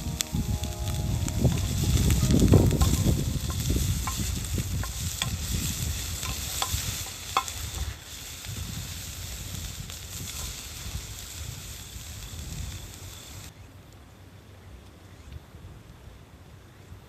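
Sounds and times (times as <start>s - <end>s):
food sizzling in frying pan: 0.0s - 13.5s.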